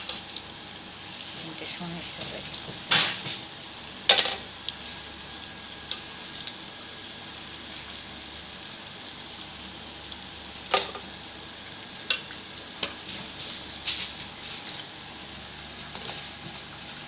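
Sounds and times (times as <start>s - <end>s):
oil sizzling deep-frying: 0.0s - 17.0s.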